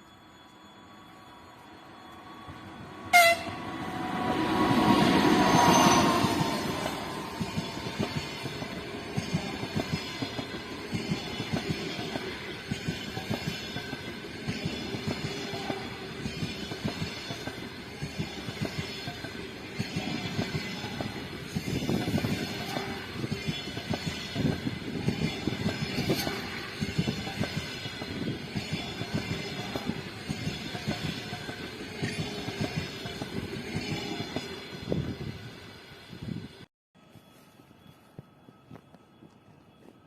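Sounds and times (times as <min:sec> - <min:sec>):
train wheels clattering on rails: 0:04.8 - 0:34.6.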